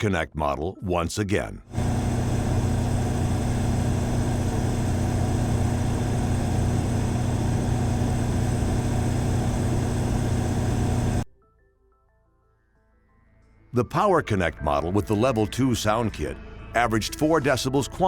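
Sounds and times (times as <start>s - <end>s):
generator engine hum: 1.7s - 11.2s.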